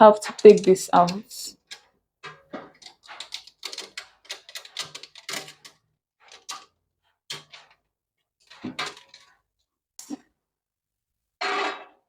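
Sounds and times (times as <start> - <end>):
handling knocks and clicks: 0.0 - 6.7.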